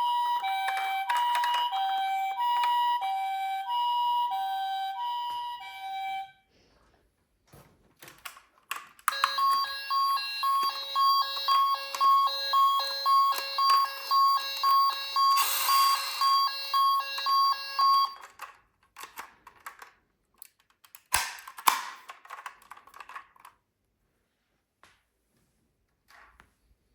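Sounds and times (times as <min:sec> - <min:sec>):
electronic beeping alarm: 0:00.0 - 0:06.4, 0:09.1 - 0:18.2
toy two-tone siren: 0:00.0 - 0:06.5, 0:09.1 - 0:18.3
plastic clicks: 0:00.6 - 0:01.8, 0:08.0 - 0:09.6, 0:18.1 - 0:23.6.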